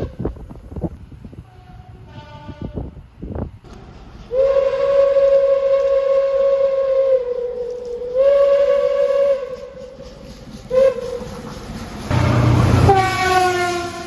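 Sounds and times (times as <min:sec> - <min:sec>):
train rushing past: 0:00.0 - 0:14.0
train horn: 0:01.4 - 0:03.0, 0:04.3 - 0:10.0, 0:10.7 - 0:11.2, 0:12.1 - 0:14.0.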